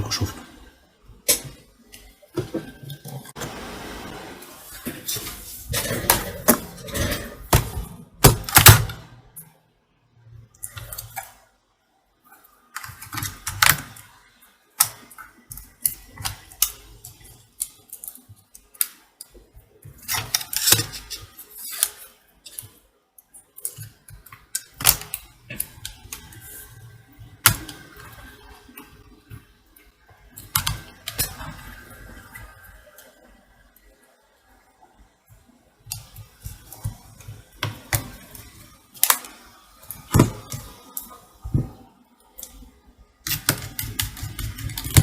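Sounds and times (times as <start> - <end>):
plastic and metal parts clicking: 14.8 - 28.3, 35.8 - 42.6.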